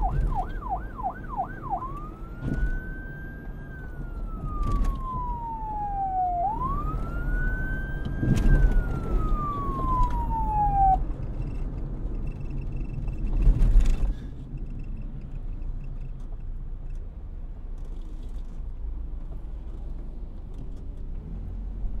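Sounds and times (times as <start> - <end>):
police siren winding down: 0.0 - 11.1.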